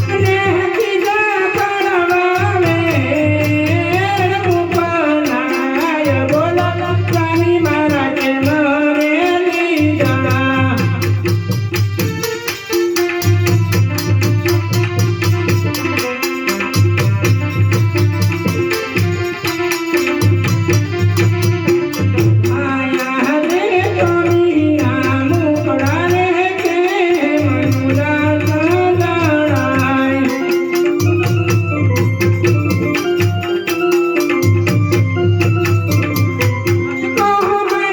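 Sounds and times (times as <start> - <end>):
rattling percussion: 0.0 - 37.9
drum beat: 10.0 - 37.9.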